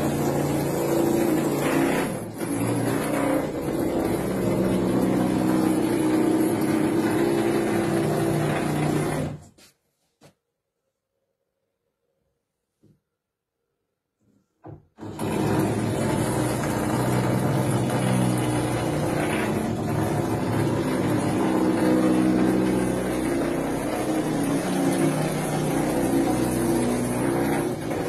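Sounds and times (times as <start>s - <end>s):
power drill running: 0.0s - 9.4s, 15.0s - 28.0s.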